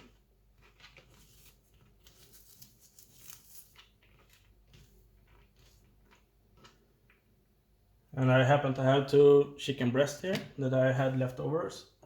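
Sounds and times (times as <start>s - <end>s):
small clicks and rustles: 0.0s - 7.4s.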